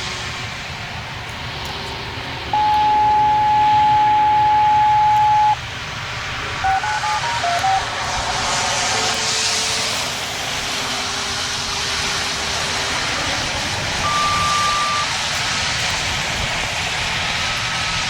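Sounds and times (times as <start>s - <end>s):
outdoor wind noise: 0.0s - 18.0s
two-tone radio paging tones: 2.6s - 5.6s, 6.6s - 7.9s, 14.0s - 15.1s.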